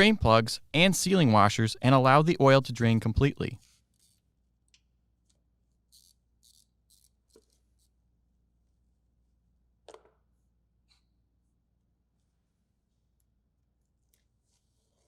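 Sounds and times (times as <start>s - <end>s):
faint clicks and scrapes: 3.6s - 8.0s.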